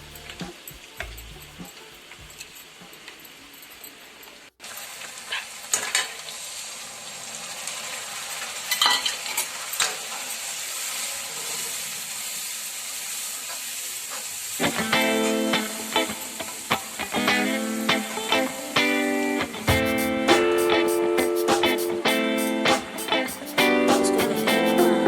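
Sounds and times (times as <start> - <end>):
guitar music: 0.0 - 1.7, 14.6 - 25.0
curry sizzling in a pan: 0.1 - 25.0.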